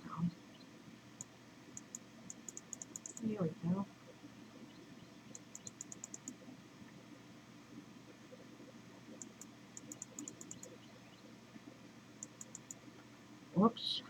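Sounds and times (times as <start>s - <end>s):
faint room noise: 0.0s - 14.0s
computer mouse clicking rapidly: 1.2s - 3.3s, 5.3s - 6.4s, 9.2s - 10.8s, 12.2s - 12.8s.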